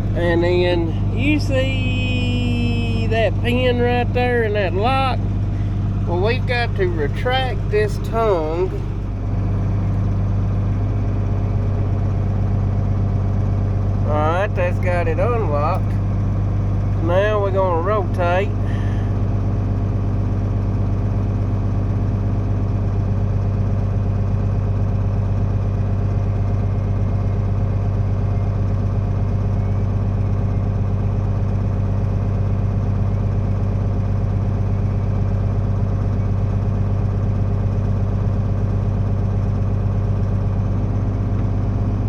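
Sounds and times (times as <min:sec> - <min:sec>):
hydraulics moving planter frame: 0:00.0 - 0:10.9
tractor diesel engine running: 0:00.0 - 0:42.0.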